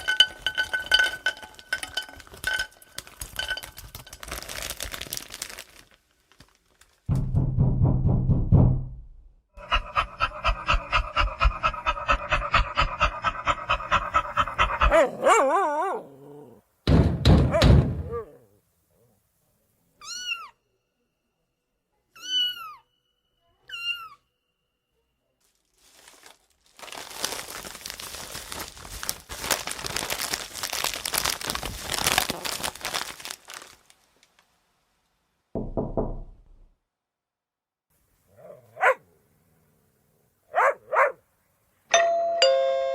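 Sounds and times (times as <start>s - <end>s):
packaging crumpled by hand: 2.0s - 7.1s, 25.4s - 34.4s
rapid strikes: 7.1s - 9.0s.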